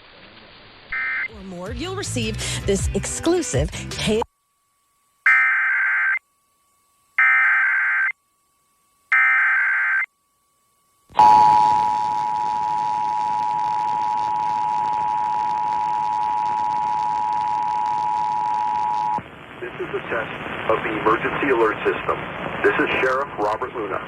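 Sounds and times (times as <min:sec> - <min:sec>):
radio noise hiss: 0:00.9 - 0:06.2, 0:11.0 - 0:24.0
two-tone attention signal: 0:11.2 - 0:19.2.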